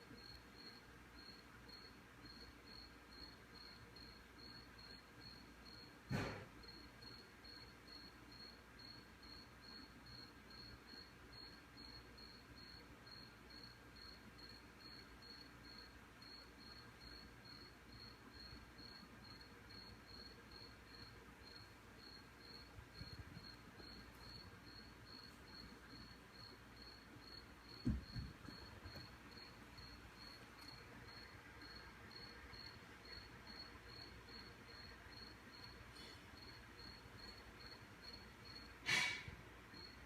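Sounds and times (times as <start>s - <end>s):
cricket chirping: 0.0s - 40.0s
dull low thump: 27.8s - 29.1s.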